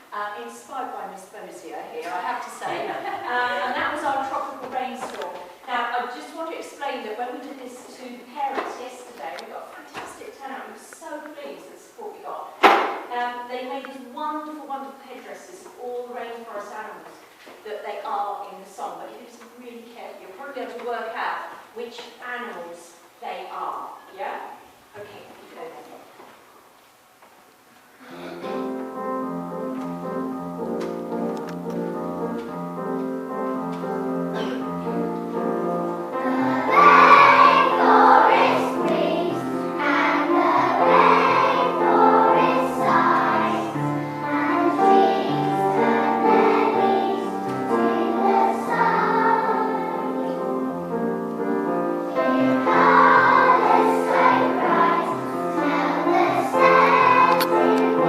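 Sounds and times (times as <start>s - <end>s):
instrumental accompaniment: 28.2s - 58.0s
young children singing: 35.9s - 50.6s, 52.1s - 58.0s.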